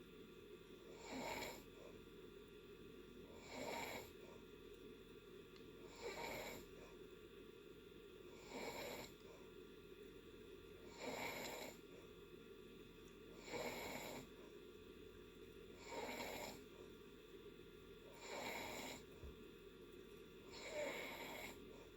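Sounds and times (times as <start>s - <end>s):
person snoring: 0.9s - 1.7s, 3.4s - 4.2s, 5.9s - 6.7s, 8.4s - 9.1s, 10.9s - 11.8s, 13.4s - 14.3s, 15.8s - 16.6s, 18.2s - 19.0s, 20.5s - 21.6s.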